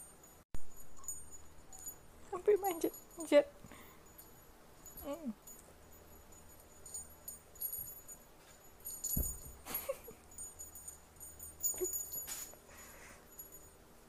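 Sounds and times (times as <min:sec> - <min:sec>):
small bell jingling: 0:00.0 - 0:14.0
soft thump: 0:09.1 - 0:09.6.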